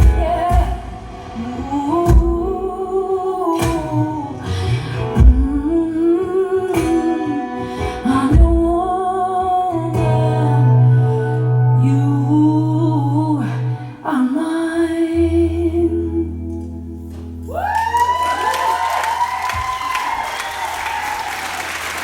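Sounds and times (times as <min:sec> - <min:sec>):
low beat thumps: 0:00.0 - 0:02.9, 0:05.2 - 0:05.8
woman singing wordlessly: 0:00.0 - 0:16.4
guitar: 0:00.0 - 0:21.6.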